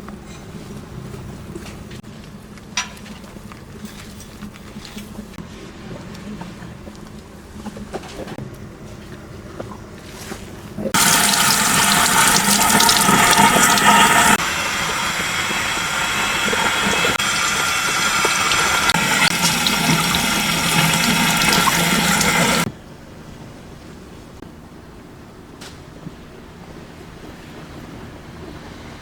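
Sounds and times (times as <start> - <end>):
water running: 10.0 - 22.7.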